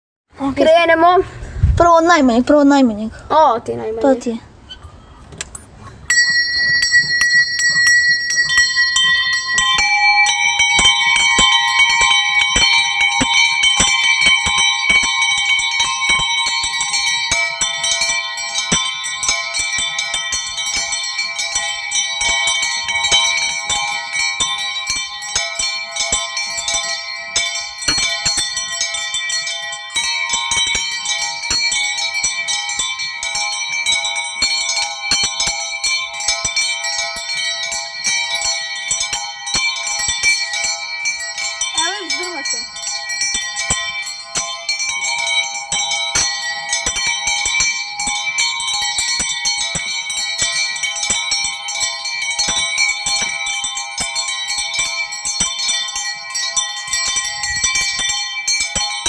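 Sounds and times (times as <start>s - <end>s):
church bells pealing: 6.1s - 59.0s.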